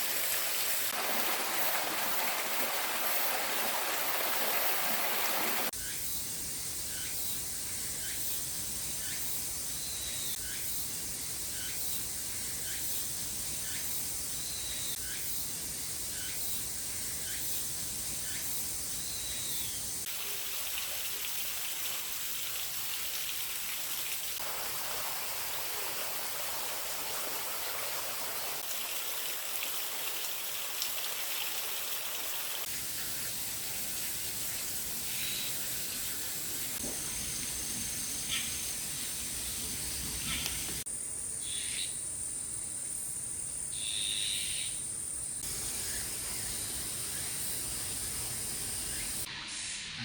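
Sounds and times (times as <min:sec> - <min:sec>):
stream water flowing: 0:00.0 - 0:05.7, 0:20.0 - 0:40.9.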